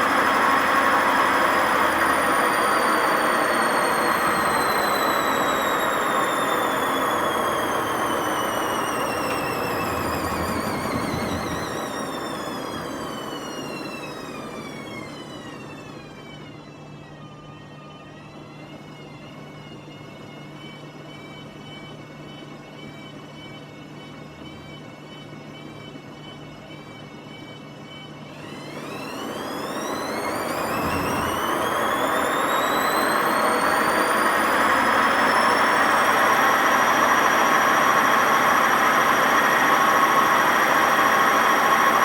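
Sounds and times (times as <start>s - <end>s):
washing machine motor whine: 0.0s - 42.0s
drum bearings rumbling: 8.5s - 12.4s.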